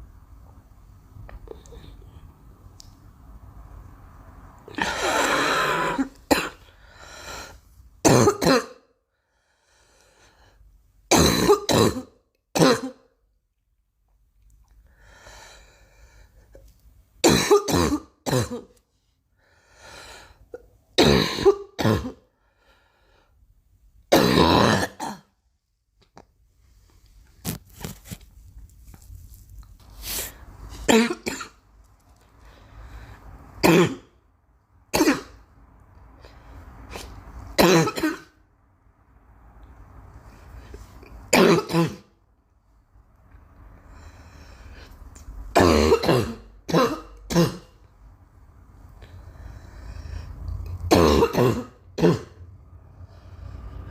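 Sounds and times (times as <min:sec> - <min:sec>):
girl coughing: 0:04.8 - 0:06.7, 0:08.0 - 0:08.8, 0:11.1 - 0:13.0, 0:17.2 - 0:18.7, 0:21.0 - 0:22.2, 0:24.1 - 0:25.3, 0:30.9 - 0:31.6, 0:33.6 - 0:34.1, 0:35.0 - 0:35.4, 0:37.0 - 0:38.4, 0:41.4 - 0:42.1, 0:45.6 - 0:47.7, 0:50.9 - 0:52.4.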